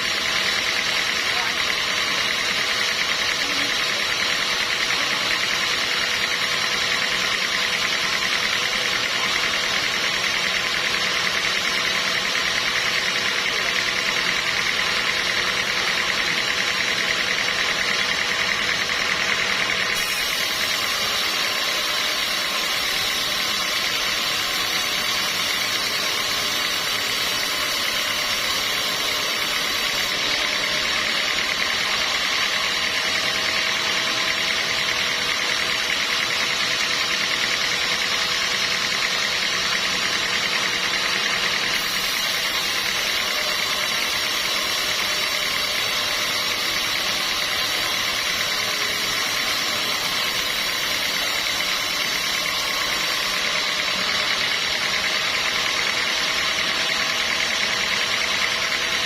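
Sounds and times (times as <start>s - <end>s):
sawmill machinery running: 0.0s - 59.0s.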